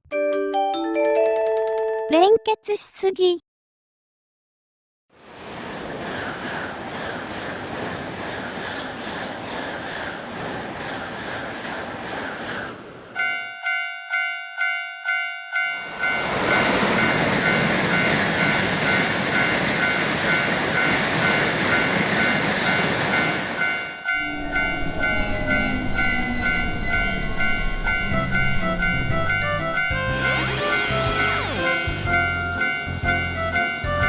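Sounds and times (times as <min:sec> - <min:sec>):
cheerful music: 0:00.0 - 0:03.4, 0:28.4 - 0:34.0
train passing with loud rush: 0:05.1 - 0:34.0
railroad crossing bell ringing: 0:13.2 - 0:34.0.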